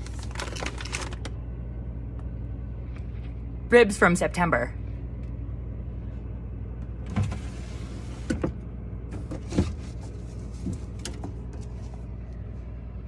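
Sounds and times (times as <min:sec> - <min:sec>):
packages rustling: 0:00.0 - 0:01.4
refrigerator low hum: 0:00.0 - 0:13.0.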